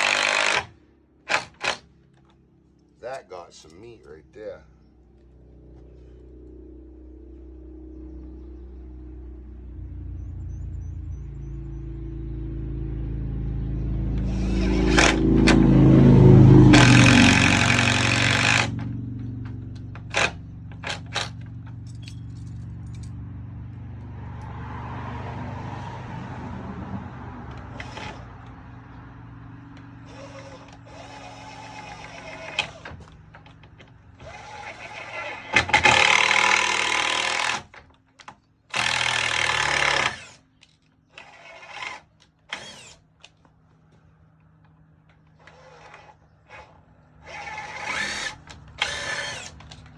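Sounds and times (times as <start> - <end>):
power drill driving screws: 0.0 - 1.9, 14.3 - 15.6, 16.7 - 18.9, 20.0 - 21.4, 27.5 - 28.5, 30.0 - 37.8, 38.7 - 40.5, 41.1 - 43.0, 45.4 - 49.9.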